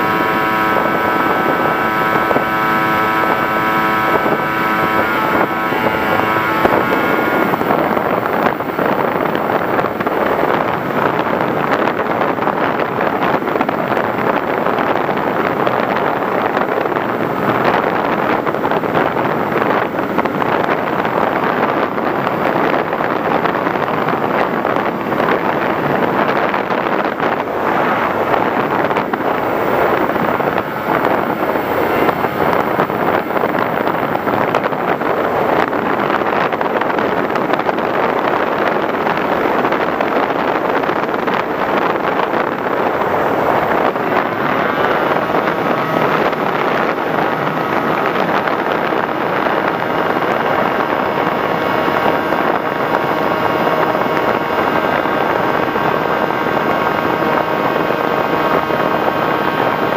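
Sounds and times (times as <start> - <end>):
model aircraft motor: 0.0 - 23.0, 24.4 - 38.4
faint whine: 0.0 - 59.9
rushing wind noise: 0.0 - 59.9.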